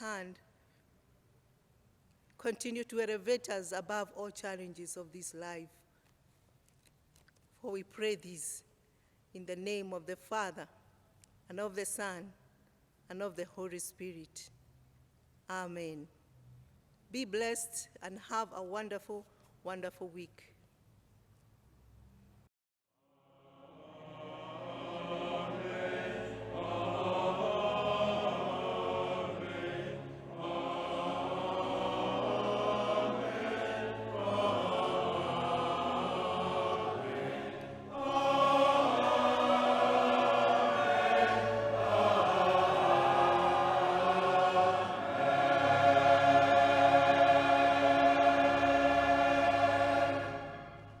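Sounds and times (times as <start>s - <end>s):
choir singing a slow hymn: 23.2s - 51.0s.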